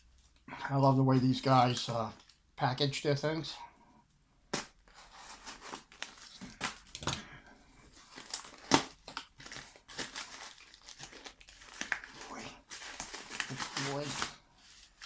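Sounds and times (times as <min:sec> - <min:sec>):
packing material crinkling: 0:04.9 - 0:07.0, 0:07.9 - 0:15.0.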